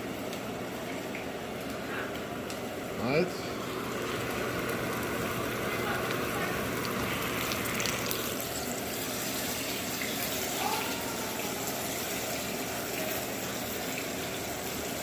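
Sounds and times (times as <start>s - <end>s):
fish frying in hot oil: 0.0s - 15.0s.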